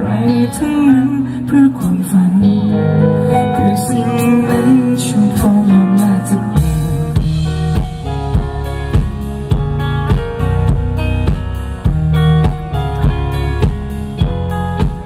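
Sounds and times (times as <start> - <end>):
guitar chords: 0.0 - 15.0
steady drum beat: 6.6 - 15.0.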